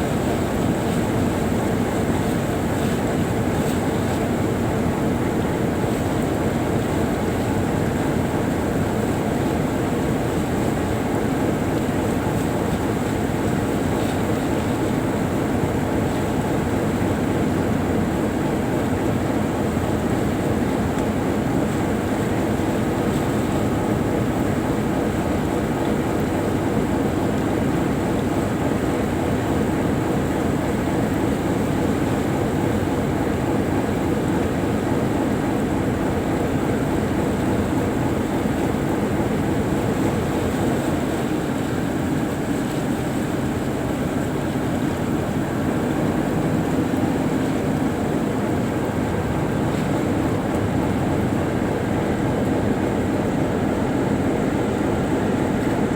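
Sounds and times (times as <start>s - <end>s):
boat engine droning: 0.0s - 55.9s.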